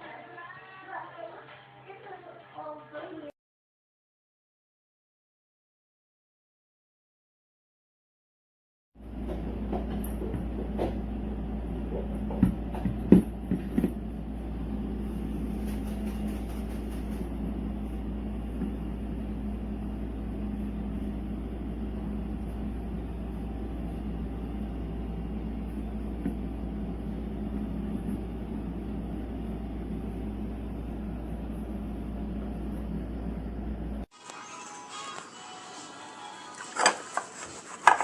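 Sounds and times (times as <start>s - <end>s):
steady low hum: 9.0s - 34.1s.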